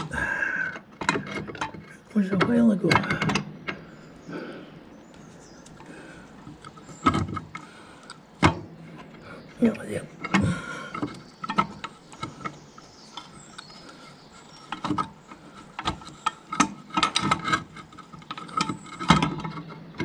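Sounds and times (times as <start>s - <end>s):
metallic clicks and knocks of parts: 0.0s - 4.1s, 10.1s - 20.0s.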